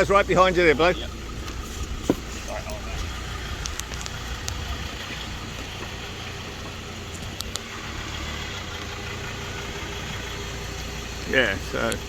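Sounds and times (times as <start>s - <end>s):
engine idling: 0.0s - 12.0s.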